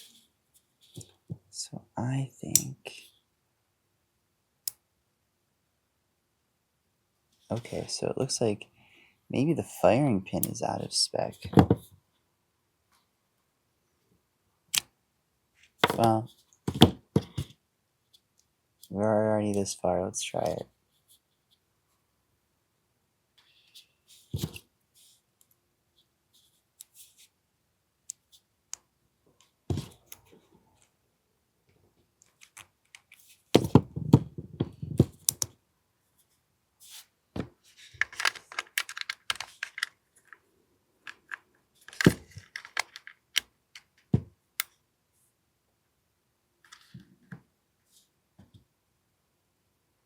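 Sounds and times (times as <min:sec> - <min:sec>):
parts clattering: 0:37.4 - 0:40.4, 0:41.0 - 0:44.1.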